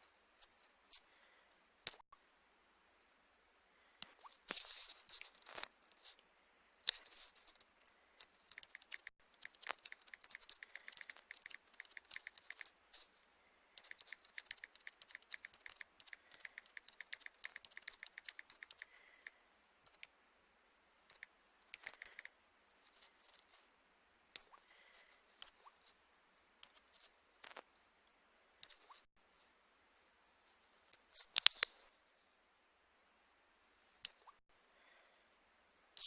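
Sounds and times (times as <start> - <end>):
faint rapid clicking: 6.8 - 13.1, 13.8 - 20.1, 21.0 - 23.5.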